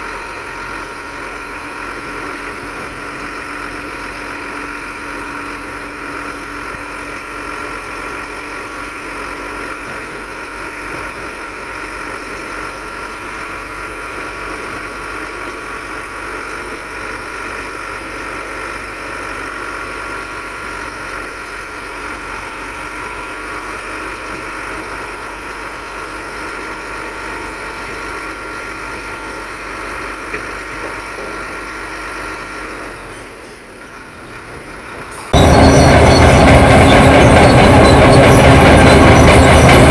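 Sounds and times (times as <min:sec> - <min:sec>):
diesel engine running: 0:35.0 - 0:39.9
steady high whine: 0:35.4 - 0:39.9.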